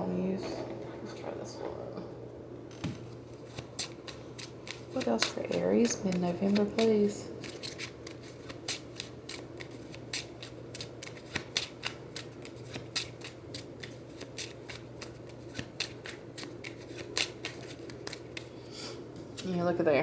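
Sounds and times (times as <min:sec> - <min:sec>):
cards being shuffled: 0:02.8 - 0:19.6.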